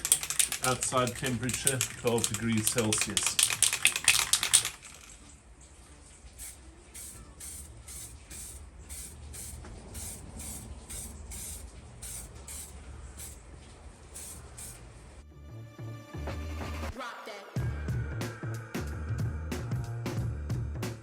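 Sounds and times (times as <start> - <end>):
spray can hissing: 0.0 - 5.2, 6.3 - 13.4, 14.1 - 14.9.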